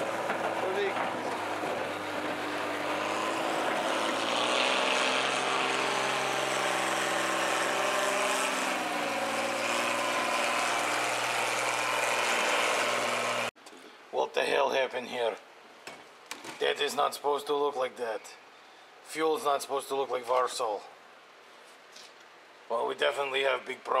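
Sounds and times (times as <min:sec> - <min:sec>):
engine running: 0:00.0 - 0:13.5.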